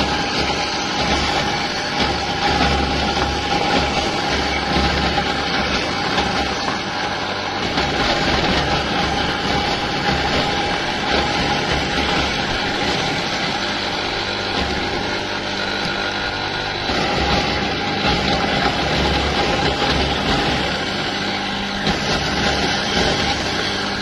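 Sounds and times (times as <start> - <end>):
electric motor whining: 0.0 - 24.0.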